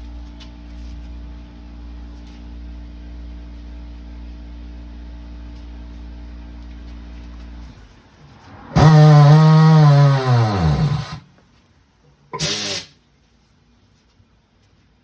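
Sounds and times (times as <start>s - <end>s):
motor humming: 8.8s - 11.2s.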